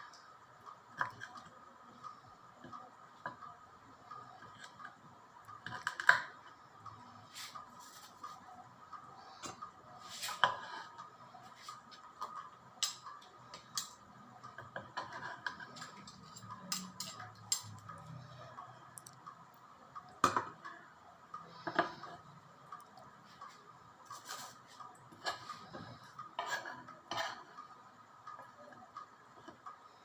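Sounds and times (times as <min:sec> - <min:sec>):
utensils clinking against dishes: 0:15.1 - 0:17.9.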